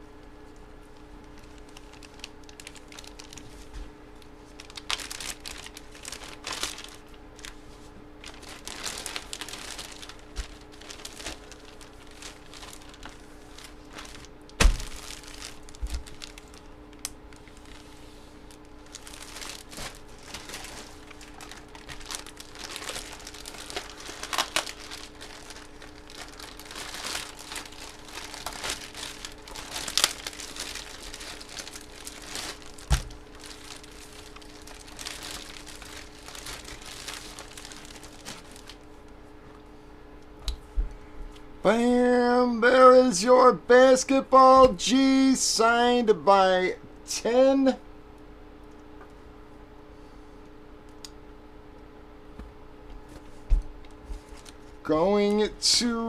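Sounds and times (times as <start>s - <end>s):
packaging crinkling and tearing: 1.2s - 7.6s, 8.2s - 38.9s, 54.2s - 55.4s.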